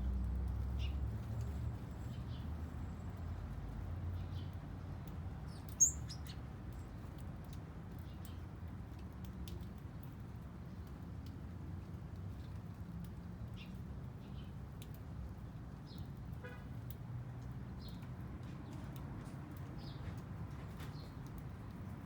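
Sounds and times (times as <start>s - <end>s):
low rumble of distant traffic: 0.0s - 22.0s
small birds chirping: 0.6s - 3.5s, 4.1s - 8.5s, 17.7s - 21.5s.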